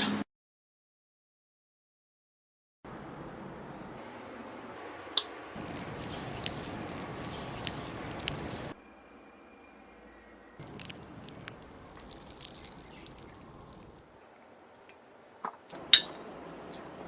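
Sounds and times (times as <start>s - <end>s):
utensil squishing through cake: 5.6s - 8.8s, 10.6s - 14.2s.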